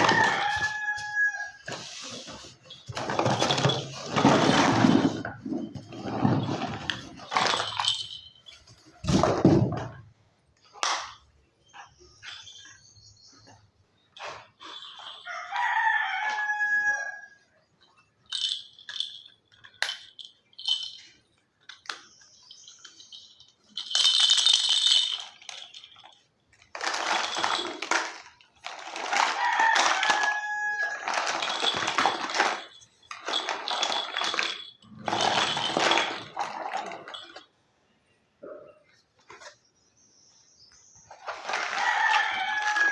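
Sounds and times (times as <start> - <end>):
rooster crowing: 0.0 - 1.7, 15.2 - 17.4, 29.3 - 31.1, 41.6 - 42.9
plastic toy pieces rustling: 0.0 - 9.4, 14.6 - 16.1, 18.3 - 37.5, 41.1 - 42.9.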